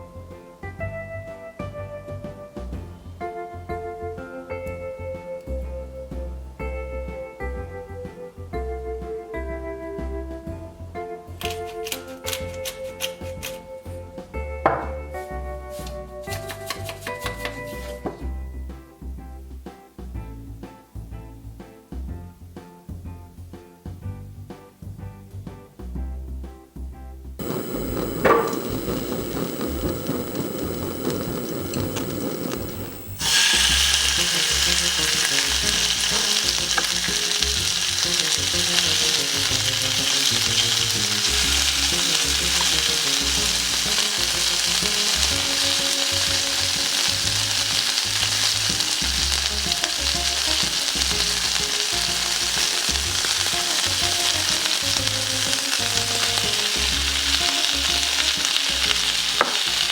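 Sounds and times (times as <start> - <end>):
soft background music: 0.0 - 59.9
food sizzling in a frying pan: 27.4 - 59.9.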